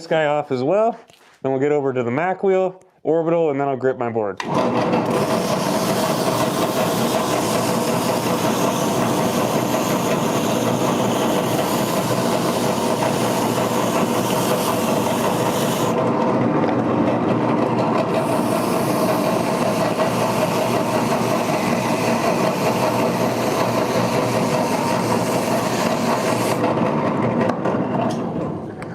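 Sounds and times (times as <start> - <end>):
drum sander humming and hissing: 4.4 - 28.0.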